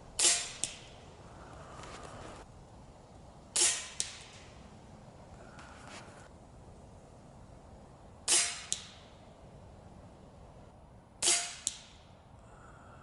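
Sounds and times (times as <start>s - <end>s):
air rifle shot: 0.2s - 1.0s, 3.6s - 4.4s, 8.3s - 9.2s, 11.2s - 12.0s.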